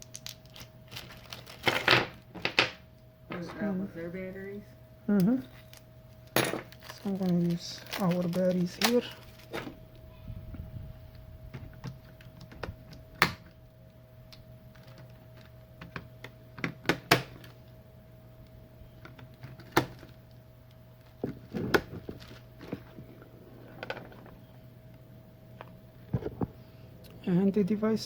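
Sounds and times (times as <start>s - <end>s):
batteries and plastic clicking: 0.0s - 2.7s, 5.2s - 9.7s
low electrical hum: 0.0s - 28.0s.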